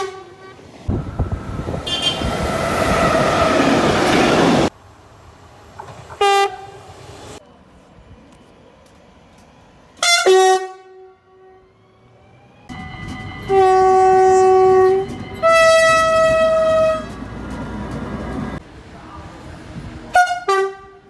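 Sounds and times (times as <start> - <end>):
train horn: 0.0 - 0.7, 1.7 - 3.1, 6.1 - 6.8, 10.0 - 11.7, 12.7 - 17.4, 20.1 - 21.0
rumble of passing train: 0.0 - 21.0.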